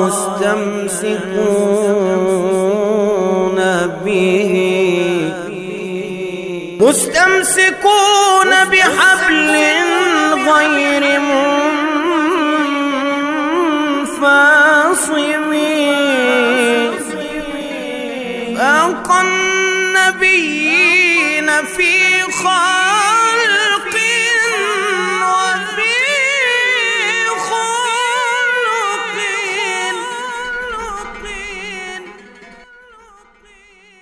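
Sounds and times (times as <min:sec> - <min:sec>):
person singing melismatic melody: 0:15.2 - 0:32.6.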